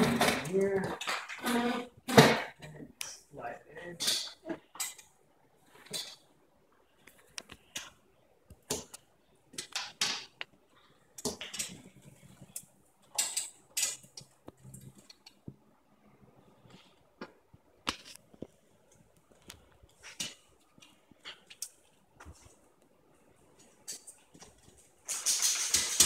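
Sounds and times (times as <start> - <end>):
curtain rustling: 23.5 - 26.0.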